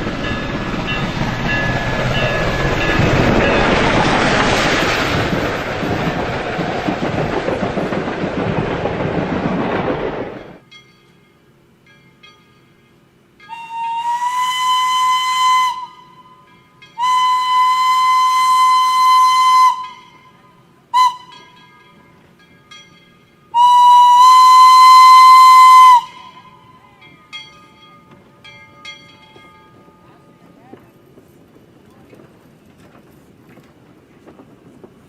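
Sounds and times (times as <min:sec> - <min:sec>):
steam locomotive whistle blasts: 0:13.4 - 0:21.6, 0:23.5 - 0:27.0.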